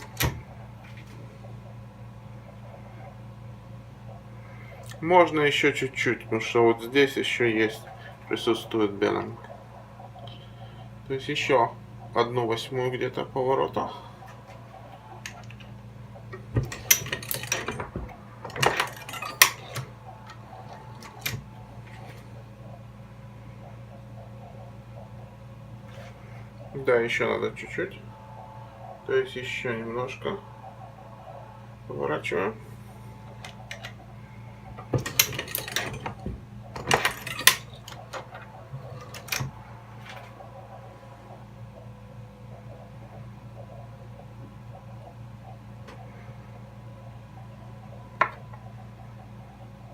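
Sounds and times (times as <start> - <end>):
low steady hum: 0.0 - 49.9
metallic clicks and clatter: 16.3 - 22.3, 33.4 - 34.0, 34.8 - 39.6
metallic clicks and clinks: 18.5 - 19.8, 35.0 - 36.2, 36.8 - 38.1.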